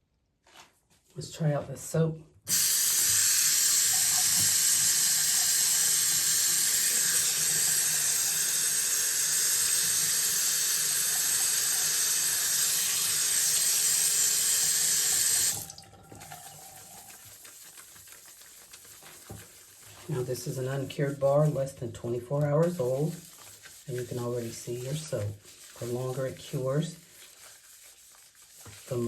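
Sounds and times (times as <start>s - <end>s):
tap water running into sink: 2.5s - 21.1s
soap bar lathering: 2.5s - 29.0s.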